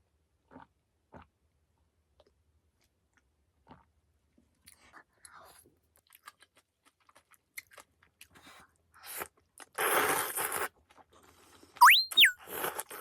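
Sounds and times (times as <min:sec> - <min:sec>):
person chewing food: 0:03.6 - 0:03.9, 0:06.0 - 0:09.8.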